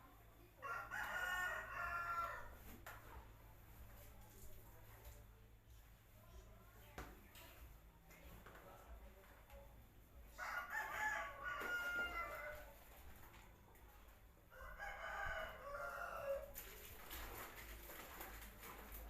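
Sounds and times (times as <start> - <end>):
rooster crowing: 0.6 - 2.5, 10.4 - 12.6, 14.5 - 16.5.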